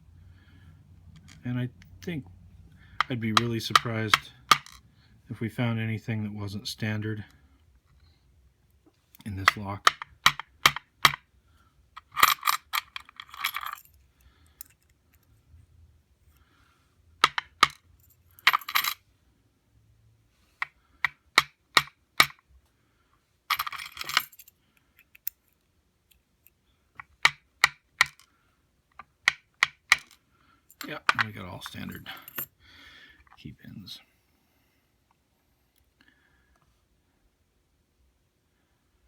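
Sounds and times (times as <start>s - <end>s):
metal pins clinking on tray: 17.2s - 19.0s, 23.5s - 25.4s.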